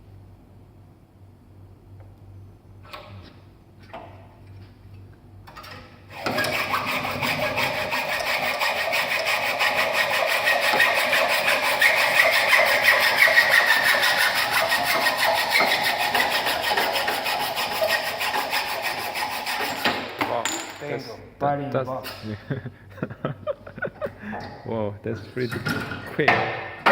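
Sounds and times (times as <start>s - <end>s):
hand saw cutting metal tube: 6.1s - 20.2s.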